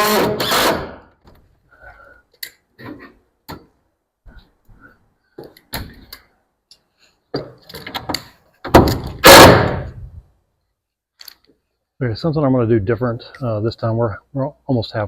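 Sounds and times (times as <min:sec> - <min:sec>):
knocks of wooden boards and tools: 0:07.3 - 0:09.7.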